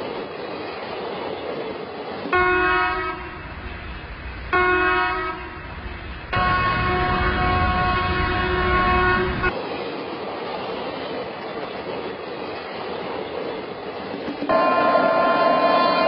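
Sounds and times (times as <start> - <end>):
running train noise: 0.0 - 16.0
train horn blast: 2.3 - 3.8, 4.5 - 9.5, 14.5 - 16.0.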